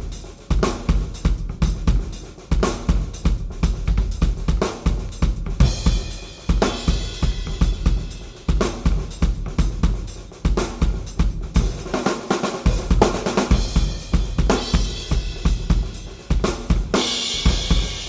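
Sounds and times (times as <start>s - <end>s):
drum kit groove: 0.0s - 18.0s.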